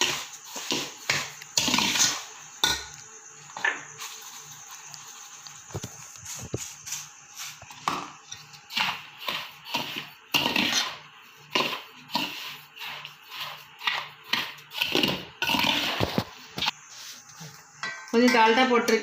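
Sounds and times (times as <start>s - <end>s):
spoon scraping metal pot: 7.5s - 16.8s.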